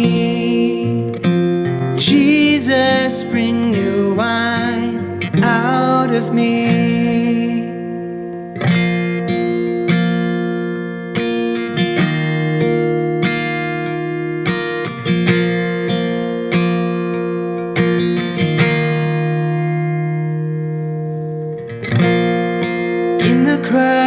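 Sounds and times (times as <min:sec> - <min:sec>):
acoustic guitar playing: 0:00.0 - 0:24.0.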